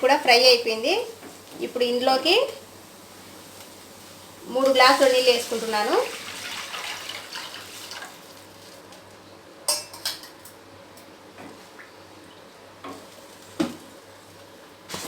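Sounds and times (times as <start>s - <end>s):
soft hiss: 0.0s - 9.6s.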